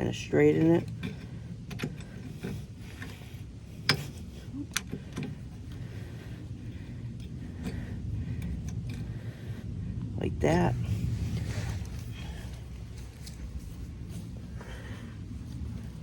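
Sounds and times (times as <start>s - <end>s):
pliers clicking and scraping metal: 0.0s - 5.8s, 7.1s - 9.2s.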